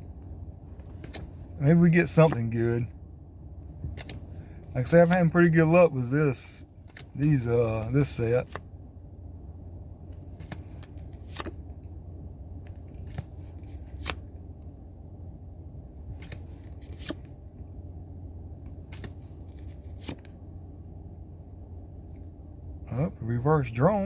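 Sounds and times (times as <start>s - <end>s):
steady low hum: 0.0s - 24.0s
trading cards flipped: 0.8s - 2.4s, 3.8s - 5.2s, 10.2s - 11.6s, 12.6s - 14.3s, 16.1s - 17.3s, 18.8s - 20.4s.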